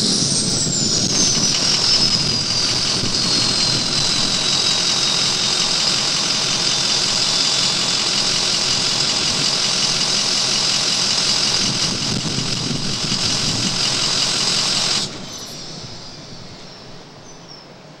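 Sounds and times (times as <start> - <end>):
diesel engine idling: 0.0 - 18.0
high turbo whistle and hiss: 0.0 - 18.0.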